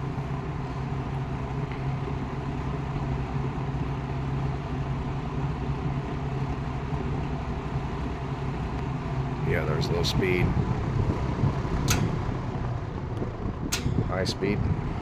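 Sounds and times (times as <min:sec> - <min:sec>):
box fan running: 0:00.0 - 0:15.0.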